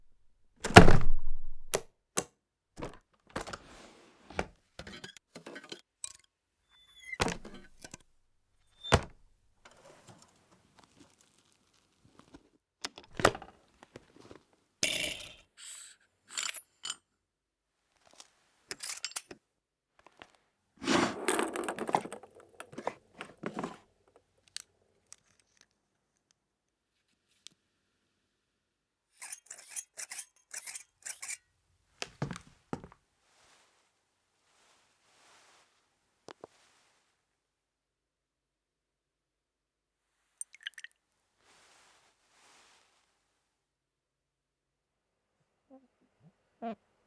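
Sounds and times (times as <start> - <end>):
tools clicking and knocking: 0.6 - 3.6.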